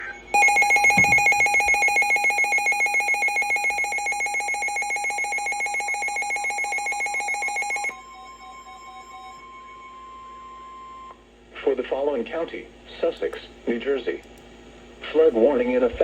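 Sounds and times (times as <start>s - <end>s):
pulsing electronic alarm tone: 0.3s - 9.4s.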